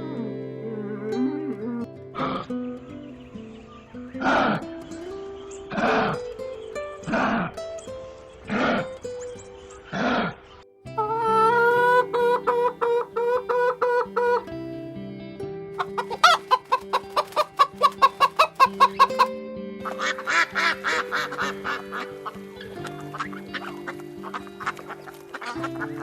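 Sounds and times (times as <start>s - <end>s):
background music: 0.0s - 26.0s
fowl clucking: 9.9s - 14.5s, 15.8s - 26.0s.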